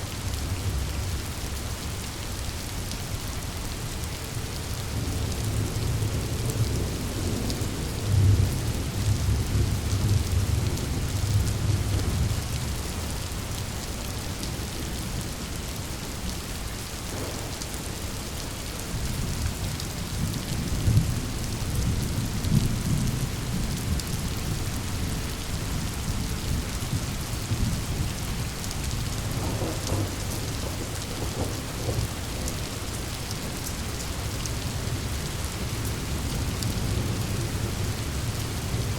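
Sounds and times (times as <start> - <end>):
heavy rain: 0.0 - 38.9
rolling thunder rumbles: 17.0 - 24.4, 27.0 - 33.0.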